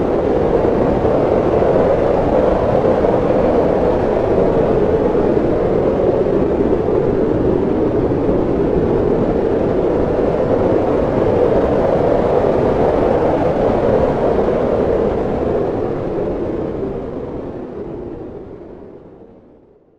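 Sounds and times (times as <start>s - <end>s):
strong wind rushing: 0.0s - 19.8s.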